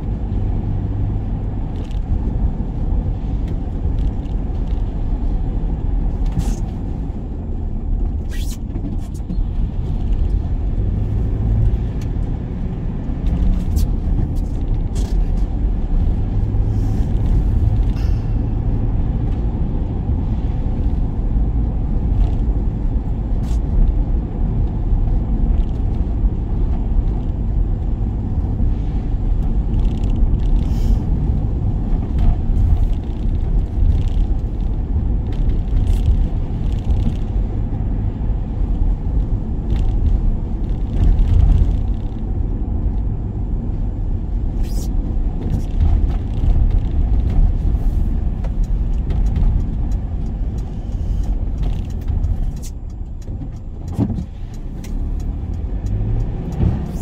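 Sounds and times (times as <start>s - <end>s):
van interior rumble: 0.0s - 57.0s
light ticks: 46.5s - 57.0s.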